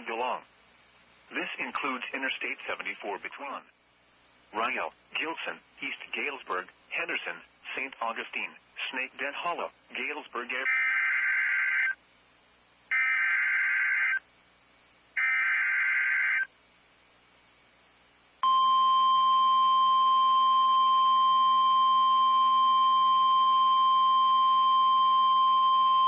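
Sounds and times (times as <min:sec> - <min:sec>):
steady warning alarm tone: 0:10.6 - 0:12.0, 0:12.9 - 0:14.2, 0:15.2 - 0:16.5.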